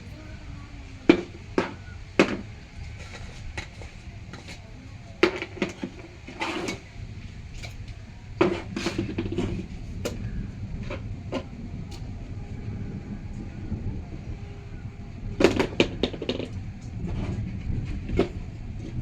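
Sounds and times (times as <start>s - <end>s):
low hum: 6.7s - 19.0s.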